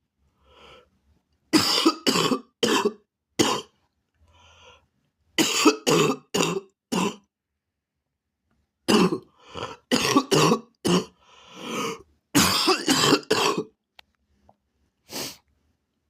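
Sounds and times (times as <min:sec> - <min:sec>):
person coughing hard: 0:01.5 - 0:03.8, 0:05.4 - 0:07.3, 0:08.9 - 0:13.7.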